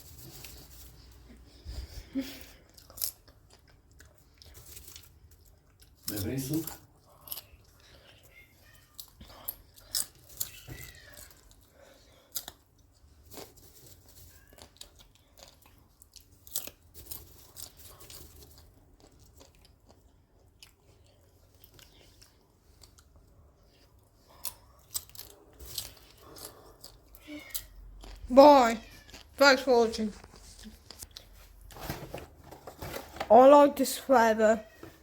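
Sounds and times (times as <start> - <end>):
person chewing popcorn crunches: 2.5 - 28.3, 28.9 - 29.4, 30.4 - 31.8.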